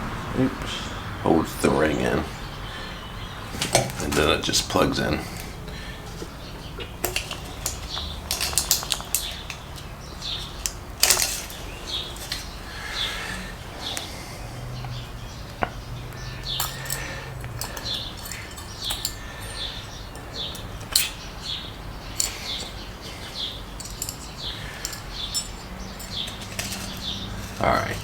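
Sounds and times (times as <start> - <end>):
small bird chirping: 1.8 - 28.0.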